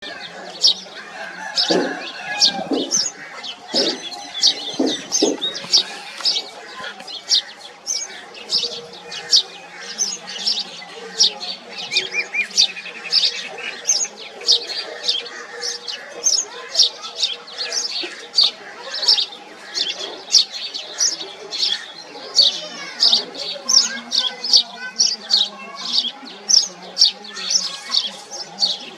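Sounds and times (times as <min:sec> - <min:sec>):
sparrows chirping: 0:00.0 - 0:28.9.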